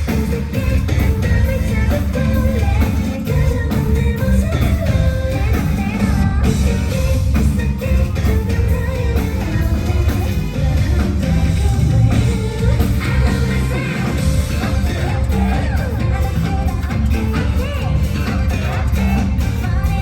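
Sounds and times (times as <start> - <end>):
drum kit: 0.0 - 20.0
electric guitar: 0.0 - 20.0
woman singing: 0.0 - 20.0.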